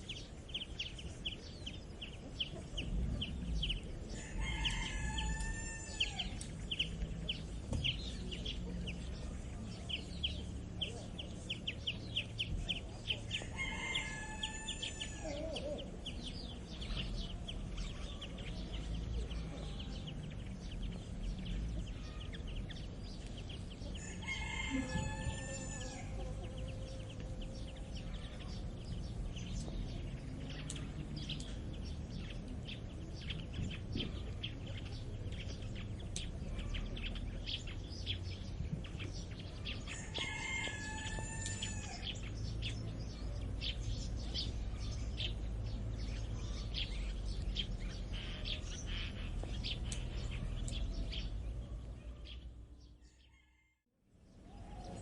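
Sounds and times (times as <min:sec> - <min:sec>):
songbirds chirping: 0:00.0 - 0:55.0
rooster crowing: 0:04.1 - 0:06.4, 0:13.5 - 0:15.7, 0:24.0 - 0:27.6, 0:39.9 - 0:42.2, 0:53.0 - 0:53.8.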